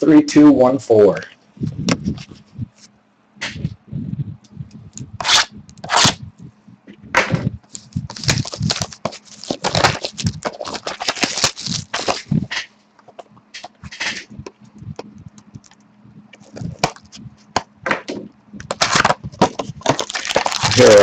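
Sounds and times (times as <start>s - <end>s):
plastic wrapping crinkling and tearing: 7.7s - 12.5s, 18.7s - 21.0s
cardboard being handled: 7.7s - 12.6s, 18.7s - 21.0s.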